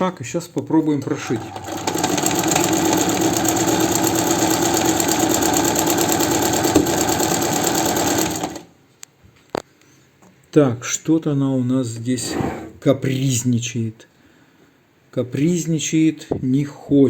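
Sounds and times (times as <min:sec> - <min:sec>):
sewing machine running: 0:00.8 - 0:08.7.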